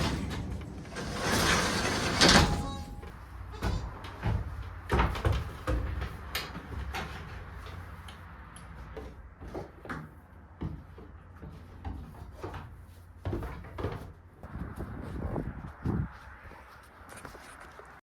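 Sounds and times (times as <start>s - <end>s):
knocks and clunks: 0.0s - 7.2s.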